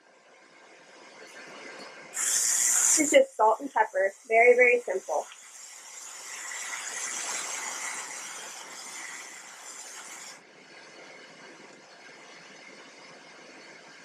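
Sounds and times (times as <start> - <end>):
food sizzling on a grill plate: 2.1 - 10.4.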